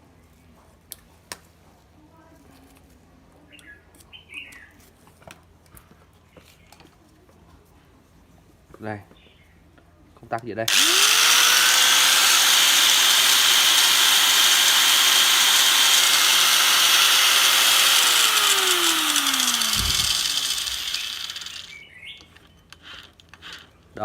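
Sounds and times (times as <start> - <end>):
power tool motor whining: 10.7 - 21.8.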